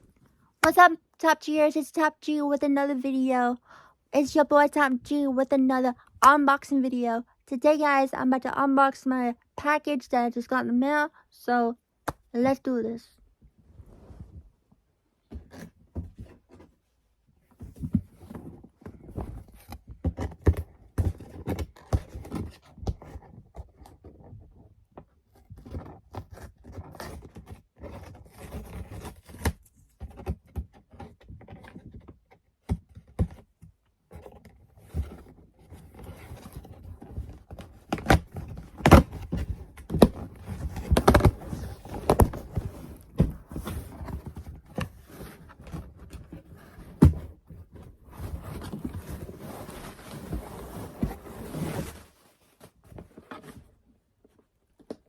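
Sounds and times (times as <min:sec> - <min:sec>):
package thuds and scrapes: 0:36.1 - 0:53.7.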